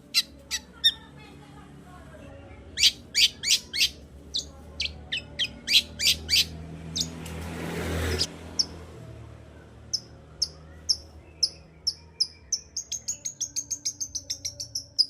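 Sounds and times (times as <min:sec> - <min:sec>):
shrike calling: 0:02.8 - 0:07.1.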